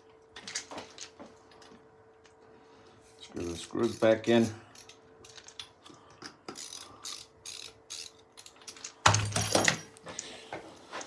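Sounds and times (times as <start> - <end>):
ratcheting screwdriver clicking: 6.5 - 8.8
lock hardware clattering: 8.6 - 10.0.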